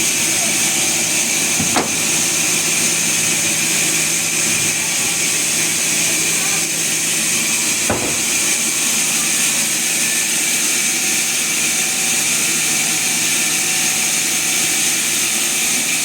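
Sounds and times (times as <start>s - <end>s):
low machinery hum: 0.0s - 10.6s
sawmill machinery hiss: 0.0s - 16.0s.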